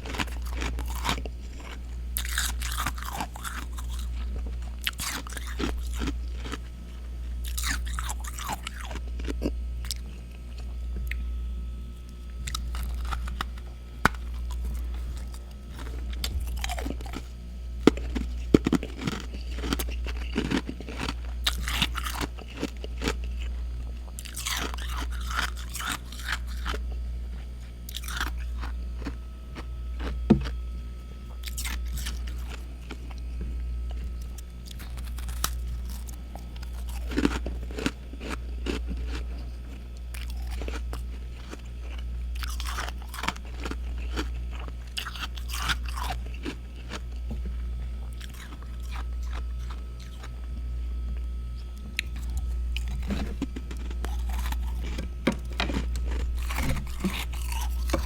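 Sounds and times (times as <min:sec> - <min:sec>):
chewing and crunching frost: 0:00.0 - 0:58.0
steady low hum: 0:00.0 - 0:58.0.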